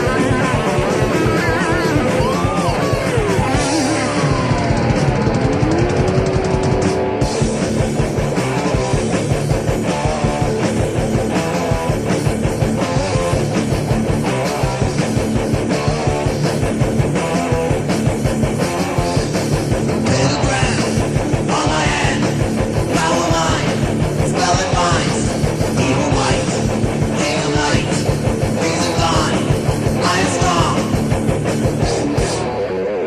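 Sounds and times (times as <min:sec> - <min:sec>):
fast drum beat: 0:00.0 - 0:32.3
distorted electric guitars: 0:00.0 - 0:33.0.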